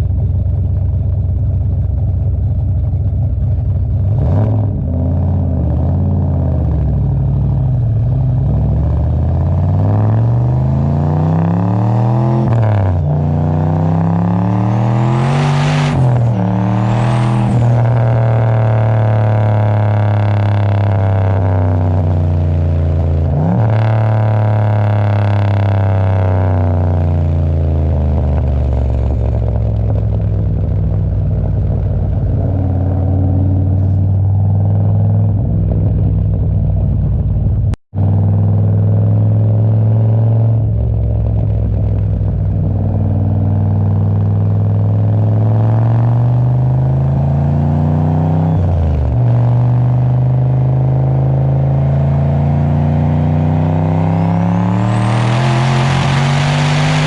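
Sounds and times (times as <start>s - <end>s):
car engine revving while driving: 4.0s - 30.0s, 38.0s - 41.9s, 42.6s - 57.0s.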